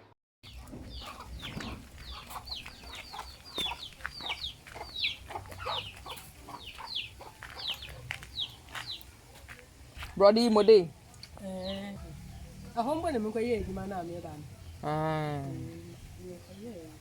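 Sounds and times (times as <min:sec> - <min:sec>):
chickens calling: 0:00.5 - 0:09.6.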